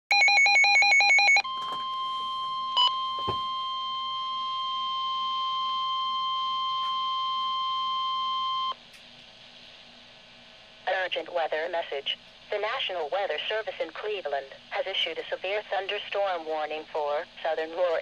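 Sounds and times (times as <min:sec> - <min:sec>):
steady warning alarm tone: 0:00.1 - 0:08.8
faint radio hiss: 0:08.8 - 0:18.0.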